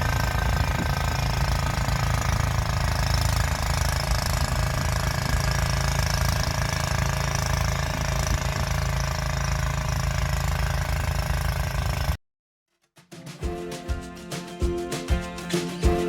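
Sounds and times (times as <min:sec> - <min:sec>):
snowblower engine running: 0:00.0 - 0:12.2.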